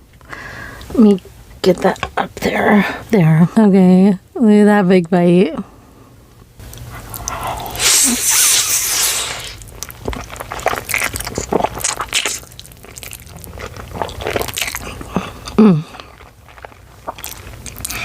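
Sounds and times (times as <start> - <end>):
wet chewing mouth sounds: 6.7 - 18.0
noodles slurped loudly: 7.2 - 12.6
short vocal sound: 7.4 - 9.6.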